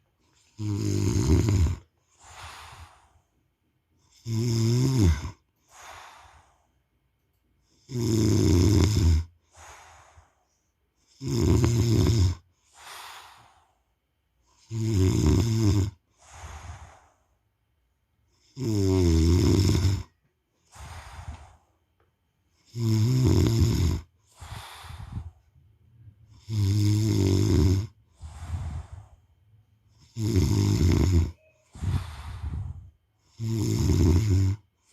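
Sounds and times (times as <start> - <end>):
man snoring: 0.4 - 3.2, 4.0 - 6.5, 7.7 - 9.7, 11.0 - 13.6, 14.6 - 17.0, 18.4 - 21.5, 22.6 - 25.4, 26.3 - 29.2, 29.9 - 34.7.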